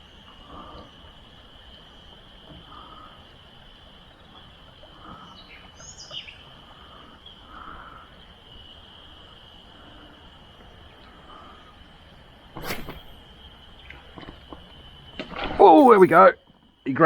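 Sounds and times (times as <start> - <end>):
high-pitched insect drone: 0.0 - 16.8
quick bird chirps: 12.6 - 13.2, 15.8 - 16.2.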